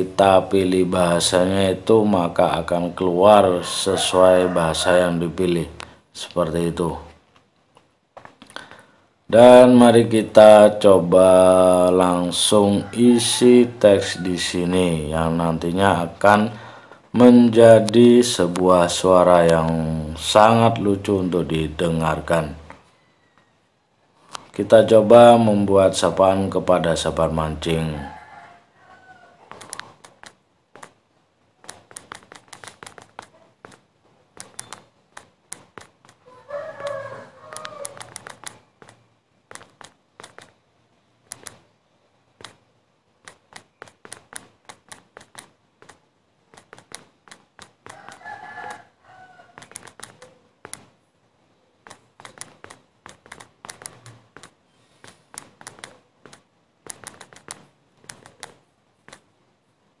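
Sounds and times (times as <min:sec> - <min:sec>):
rooster crowing: 0:03.4 - 0:05.3, 0:12.4 - 0:14.6, 0:22.8 - 0:23.7, 0:27.8 - 0:29.8, 0:36.2 - 0:38.4, 0:47.9 - 0:49.8
phone keyboard typing clicks: 0:29.5 - 0:31.0, 0:31.6 - 0:36.2, 0:37.5 - 0:40.6, 0:41.2 - 0:41.6, 0:42.4 - 0:42.6, 0:43.2 - 0:48.3, 0:49.6 - 0:50.9, 0:51.8 - 0:59.3.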